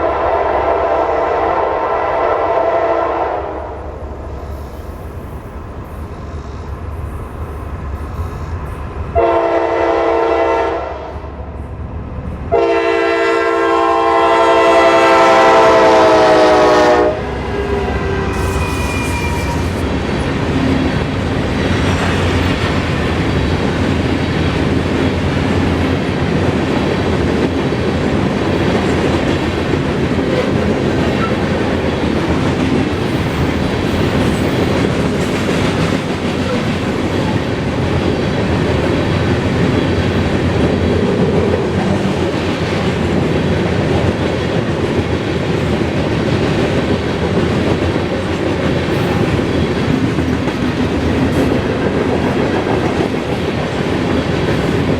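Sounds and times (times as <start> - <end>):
train wheels clacking over rail joints: 17.3 - 54.9.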